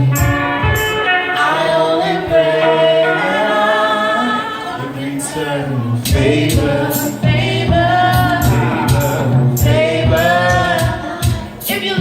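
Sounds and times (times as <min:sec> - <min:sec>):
drum beat: 0:00.0 - 0:01.1, 0:06.0 - 0:12.0
person singing: 0:01.2 - 0:12.0
deep bass line: 0:06.0 - 0:11.5.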